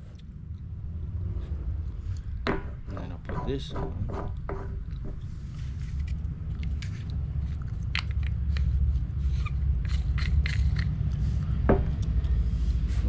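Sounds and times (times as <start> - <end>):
steady low rumble: 0.0 - 13.0
small parts clicking and tapping: 6.0 - 11.2.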